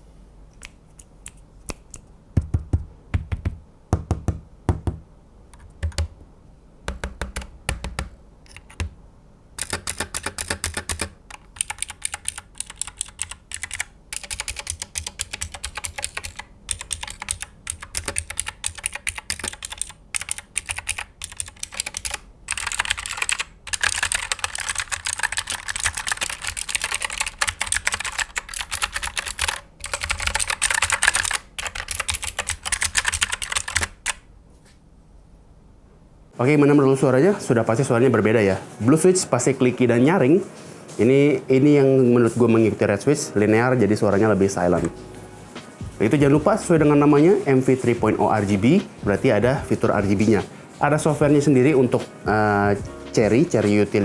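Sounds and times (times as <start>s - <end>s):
typing on mechanical keyboard: 5.6s - 6.1s, 6.9s - 9.0s, 9.6s - 34.2s.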